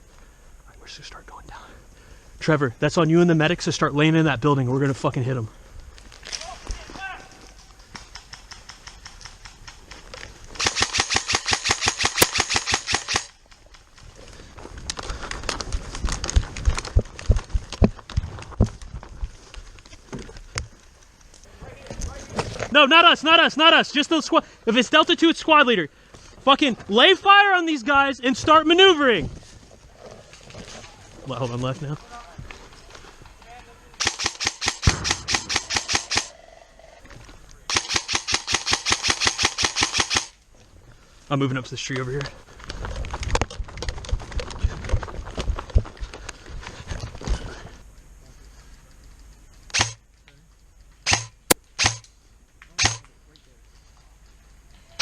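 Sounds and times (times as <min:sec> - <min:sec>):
airsoft guns firing: 0:10.6 - 0:13.4, 0:33.9 - 0:36.5, 0:37.7 - 0:40.4, 0:49.7 - 0:50.0, 0:51.0 - 0:52.1, 0:52.7 - 0:53.1.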